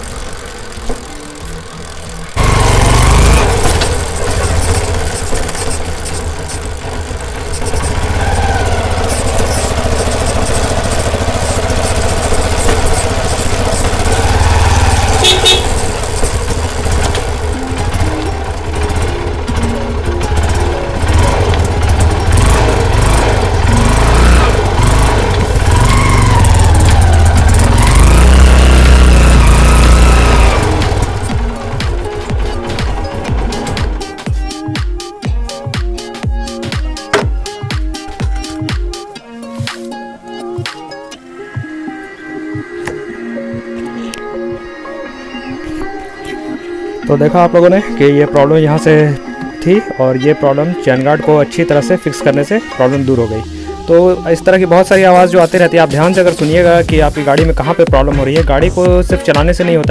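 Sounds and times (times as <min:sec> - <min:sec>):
road and wind rumble: 0:00.0 - 0:34.3
motorcycle engine revving: 0:00.0 - 0:39.9, 0:52.2 - 0:59.0.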